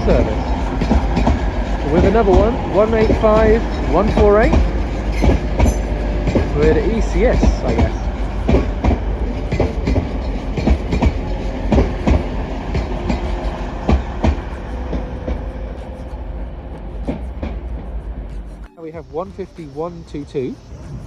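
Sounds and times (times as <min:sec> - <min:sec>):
train rumbling past: 0:00.0 - 0:21.0
train wheels clicking over rail joints: 0:00.0 - 0:21.0.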